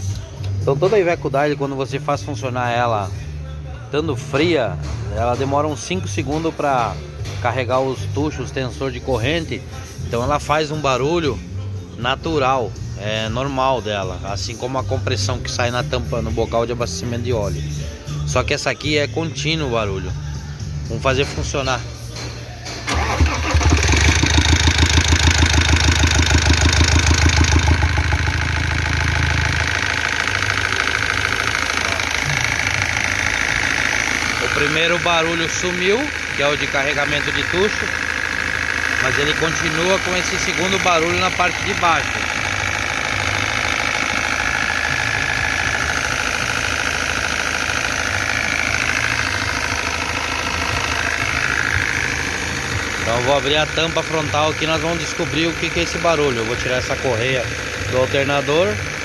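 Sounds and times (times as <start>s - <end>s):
diesel engine starting: 12.0s - 59.0s
diesel engine idling: 13.8s - 59.0s.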